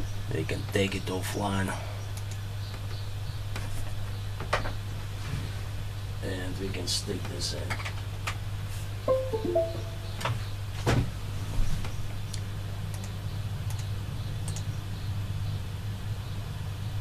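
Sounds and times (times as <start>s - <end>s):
computer falling chime: 9.1s - 10.1s.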